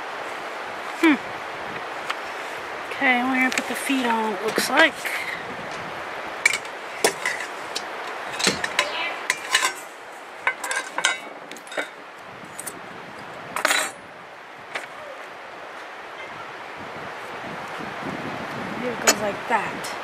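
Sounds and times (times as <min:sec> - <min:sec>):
metal grill parts clinking: 0:06.4 - 0:12.0, 0:13.6 - 0:14.0
metallic rattle: 0:06.4 - 0:12.0.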